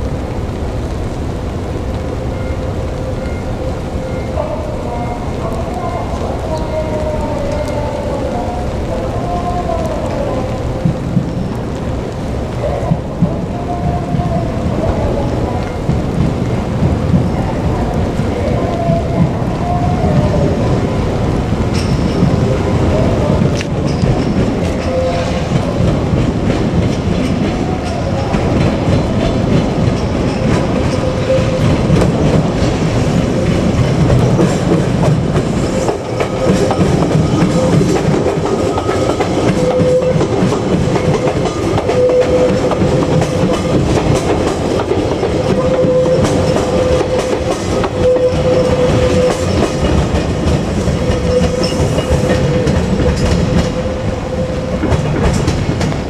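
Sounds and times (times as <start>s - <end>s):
train rumble: 0.0s - 56.0s
crossing warning bell: 1.2s - 8.8s, 14.9s - 19.6s, 20.6s - 26.3s, 26.9s - 55.6s
train wheels clacking over rail joints: 21.2s - 56.0s.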